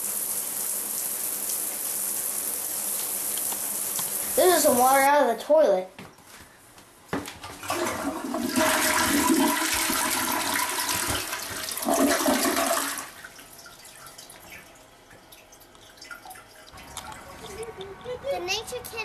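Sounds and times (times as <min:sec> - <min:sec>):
toilet flushing: 0:00.0 - 0:05.0, 0:07.5 - 0:17.5
water running into tank: 0:07.5 - 0:18.2.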